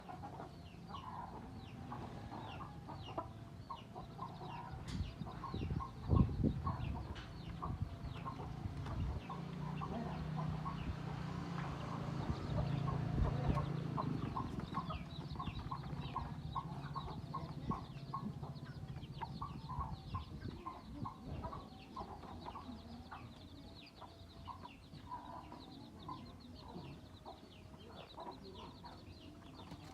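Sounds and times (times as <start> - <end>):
chickens clucking: 0.0 - 29.9.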